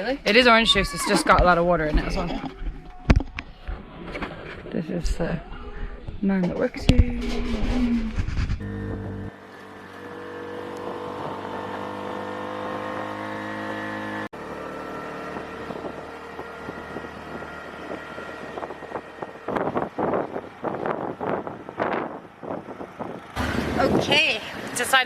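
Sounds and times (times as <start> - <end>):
wind on microphone: 0.6 - 9.3, 15.3 - 24.9
small engine droning: 8.6 - 25.0.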